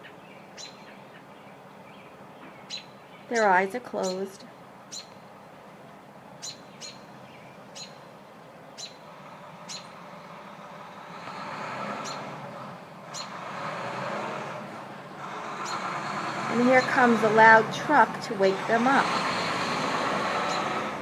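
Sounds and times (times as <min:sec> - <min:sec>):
high bird chirps: 0:01.9 - 0:04.2, 0:06.4 - 0:08.0, 0:08.8 - 0:09.0, 0:09.7 - 0:10.0, 0:13.1 - 0:13.4, 0:15.6 - 0:15.8
passing truck rumble: 0:07.0 - 0:21.0.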